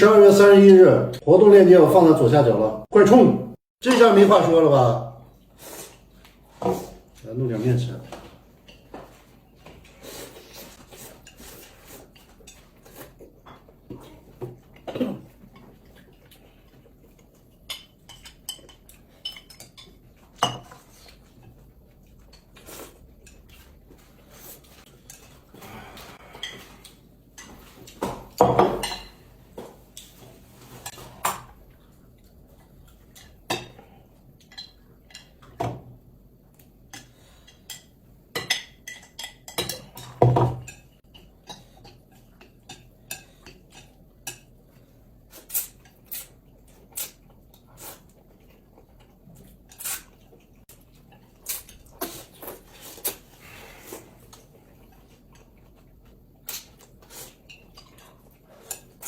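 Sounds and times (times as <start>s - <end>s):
cutlery clinking against dishes: 26.3s - 29.2s, 37.0s - 44.5s.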